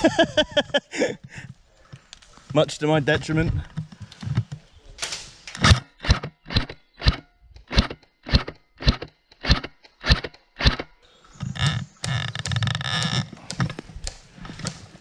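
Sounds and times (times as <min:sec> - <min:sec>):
footsteps on woodland floor: 0:00.1 - 0:04.8
scraping and rustling: 0:01.3 - 0:06.3.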